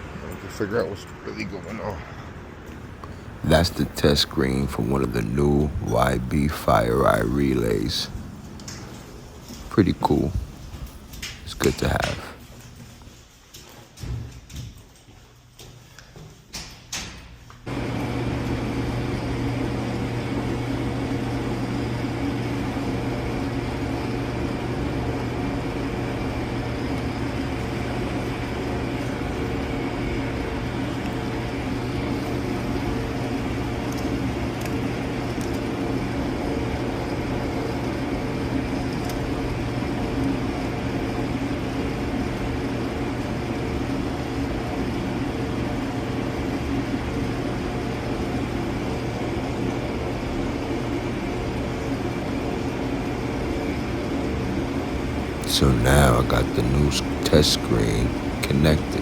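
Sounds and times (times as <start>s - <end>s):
machinery hum and rumble: 3.0s - 9.2s, 55.0s - 59.0s.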